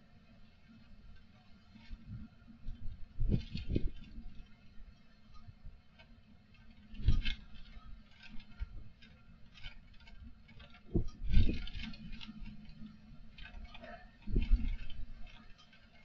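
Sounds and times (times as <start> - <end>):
light ticking and rattling: 0.2 - 16.0
wind buffeting microphone: 2.0 - 4.4, 6.8 - 15.4.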